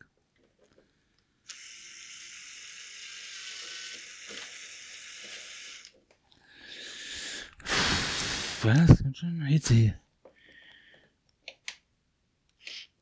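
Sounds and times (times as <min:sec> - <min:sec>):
heat gun blowing hot air: 0:01.5 - 0:05.9, 0:07.7 - 0:08.6.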